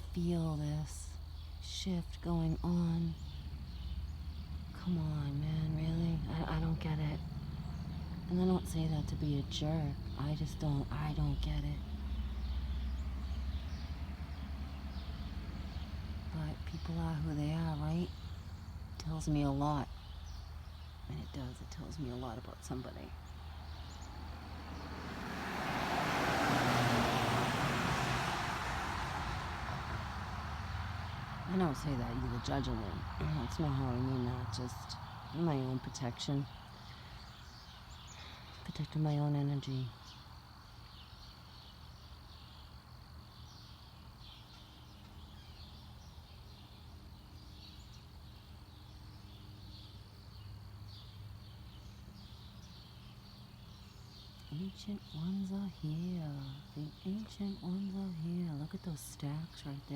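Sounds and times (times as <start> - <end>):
car driving past: 3.2 - 4.8, 5.8 - 17.3, 23.1 - 35.9.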